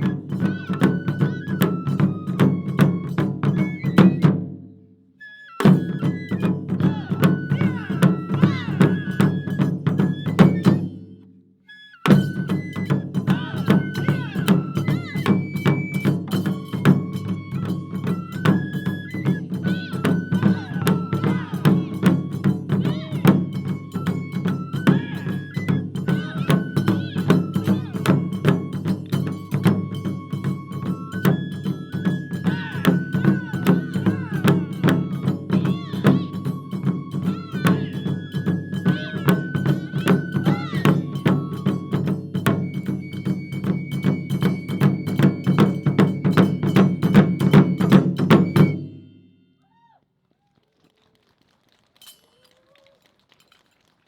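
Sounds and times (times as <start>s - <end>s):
taiko drums playing fast rhythms: 0.0s - 4.6s, 5.6s - 11.1s, 12.1s - 49.1s.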